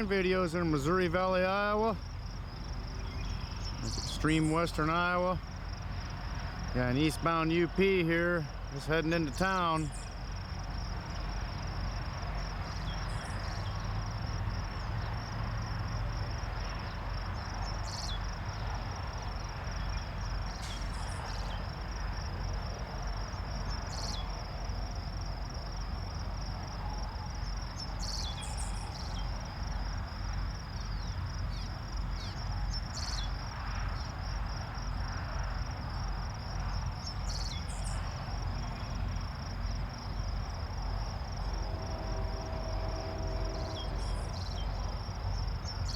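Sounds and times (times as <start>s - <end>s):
insects chirring: 0.0s - 45.9s
low steady rumble: 37.8s - 45.9s.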